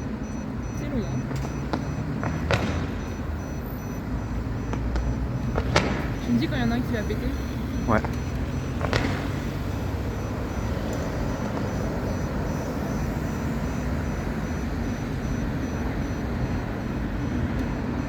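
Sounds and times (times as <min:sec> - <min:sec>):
steady rumbling din: 0:00.0 - 0:18.0
fireworks crack: 0:04.6 - 0:06.4, 0:07.9 - 0:12.7.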